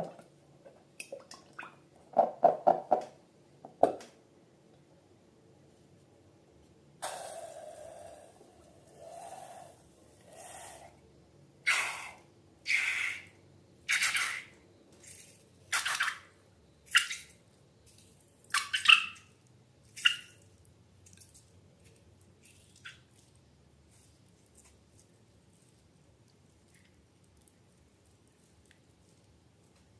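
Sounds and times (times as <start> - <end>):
wet slime squishes: 16.9 - 29.9.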